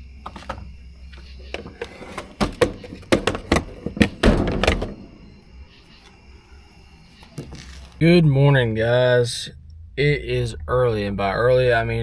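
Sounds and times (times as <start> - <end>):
sharp knocks and clunks: 0.2 - 5.5
rumbling thud: 2.3 - 5.6.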